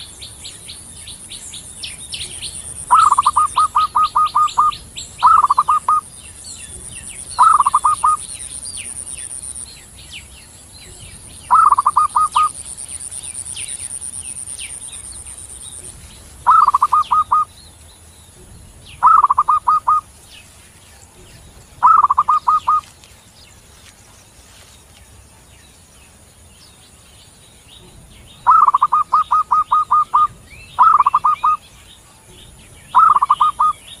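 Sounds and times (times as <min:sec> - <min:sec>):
small birds chirping: 0:00.0 - 0:34.0
dove cooing: 0:02.3 - 0:06.0, 0:07.4 - 0:08.2, 0:11.5 - 0:12.6, 0:15.8 - 0:17.5, 0:19.0 - 0:20.0, 0:21.8 - 0:22.9, 0:28.4 - 0:31.6, 0:32.9 - 0:33.8.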